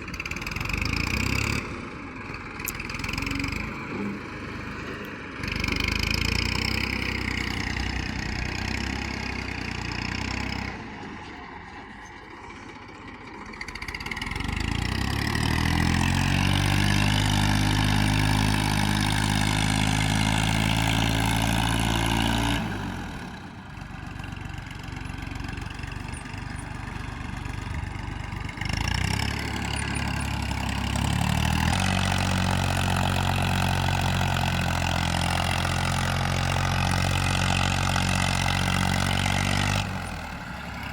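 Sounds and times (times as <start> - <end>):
heavy vehicle engines running: 0.0 - 40.9
engine revving up: 0.2 - 1.9, 2.6 - 11.0, 14.0 - 23.4, 28.4 - 40.9.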